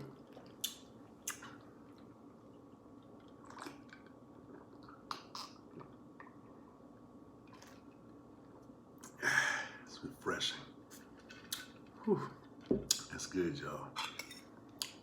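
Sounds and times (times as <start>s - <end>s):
person drinking gulps: 0.0s - 6.8s.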